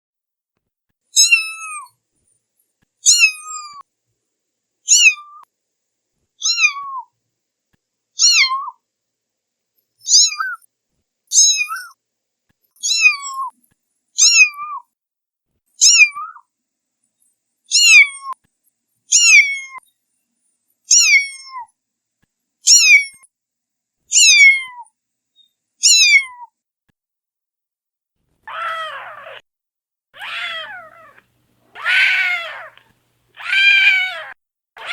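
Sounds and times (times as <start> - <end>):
cat meowing: 1.2 - 1.9, 3.1 - 3.8, 4.9 - 5.4, 6.4 - 7.1, 8.2 - 8.8, 10.1 - 10.6, 11.3 - 12.0, 12.8 - 13.5, 14.2 - 14.9, 15.8 - 16.4, 17.7 - 18.4, 19.1 - 19.8, 20.9 - 21.7, 22.7 - 23.2, 24.1 - 24.9, 25.8 - 26.5, 28.4 - 29.4, 30.2 - 34.9
rough low cat meow: 28.4 - 29.4, 30.2 - 34.9.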